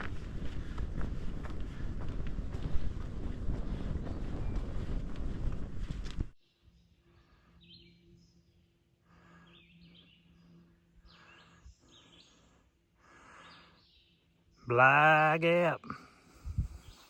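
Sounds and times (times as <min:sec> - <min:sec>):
wind on microphone: 0:00.0 - 0:06.4, 0:16.4 - 0:17.0
woodland birds chirping: 0:06.4 - 0:14.9, 0:16.8 - 0:17.0.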